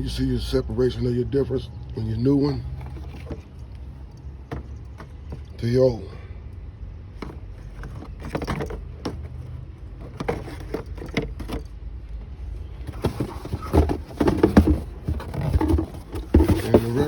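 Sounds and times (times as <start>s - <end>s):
plastic parts clicking and knocking: 2.9s - 5.6s, 7.1s - 17.0s.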